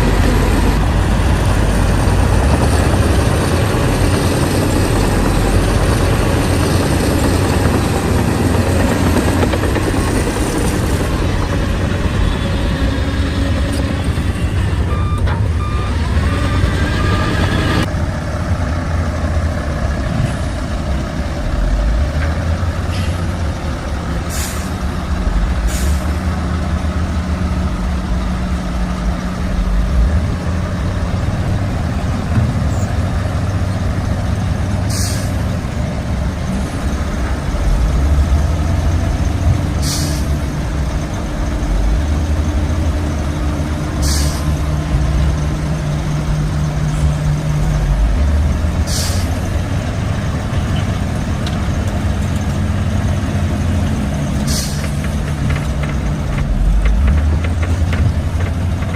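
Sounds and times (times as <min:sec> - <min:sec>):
diesel engine running under load: 0:00.0 - 0:58.9
short sharp hisses: 0:34.9 - 0:35.4, 0:44.0 - 0:44.4, 0:48.9 - 0:49.4, 0:54.5 - 0:54.9.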